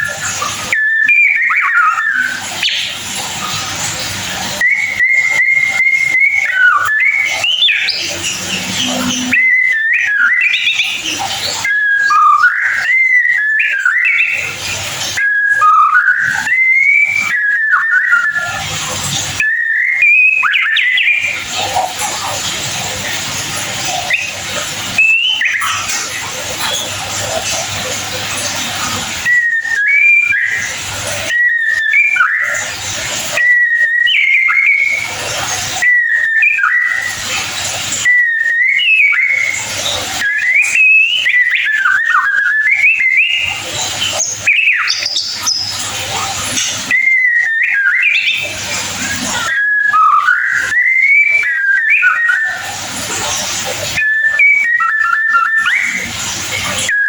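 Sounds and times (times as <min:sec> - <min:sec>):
bird whistled phrases: 0:00.0 - 0:57.0.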